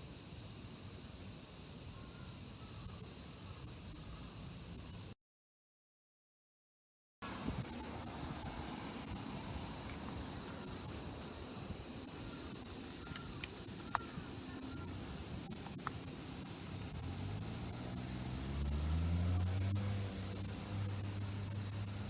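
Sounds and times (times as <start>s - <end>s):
high-pitched insect chorus: 0.0s - 5.2s, 7.2s - 22.0s.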